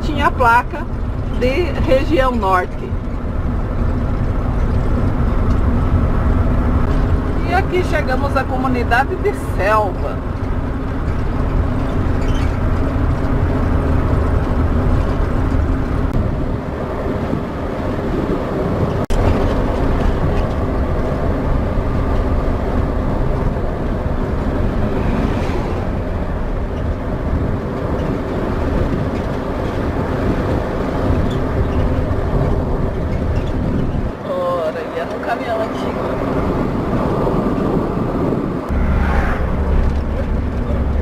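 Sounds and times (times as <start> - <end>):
road and tyre noise: 0.0 - 41.0
engine drone: 37.1 - 41.0.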